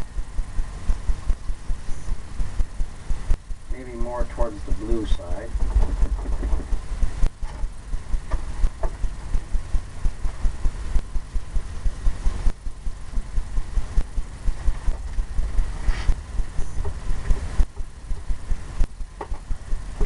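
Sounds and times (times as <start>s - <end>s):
brush scrubbing paint: 14.6s - 17.5s.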